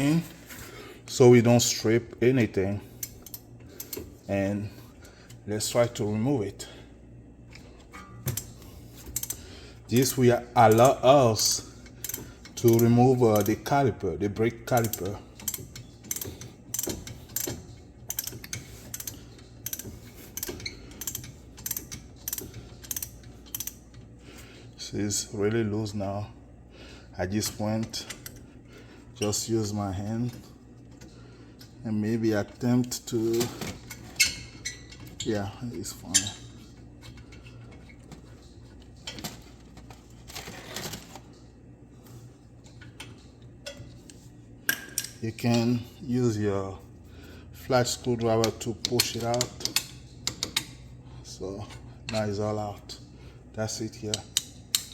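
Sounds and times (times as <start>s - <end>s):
ratchet clicking: 9.1s - 9.4s, 10.0s - 13.7s, 14.7s - 23.8s.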